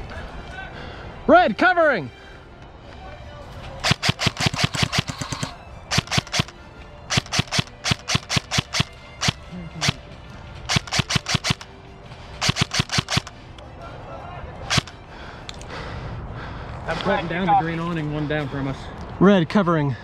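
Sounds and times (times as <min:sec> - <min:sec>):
airsoft rifle shots: 0:03.8 - 0:06.5, 0:07.1 - 0:10.0, 0:10.7 - 0:11.7, 0:12.4 - 0:13.3, 0:14.7 - 0:15.0.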